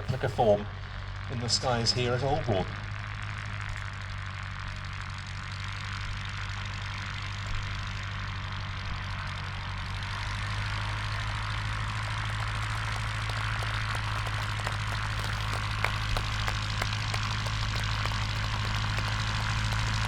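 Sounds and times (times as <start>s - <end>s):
propeller engine droning: 9.8s - 20.0s.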